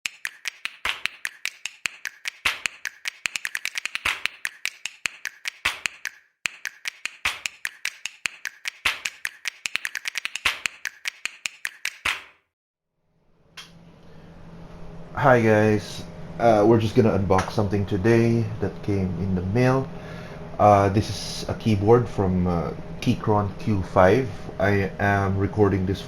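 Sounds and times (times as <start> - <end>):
mechanical keyboard keystrokes: 0.0 - 12.3.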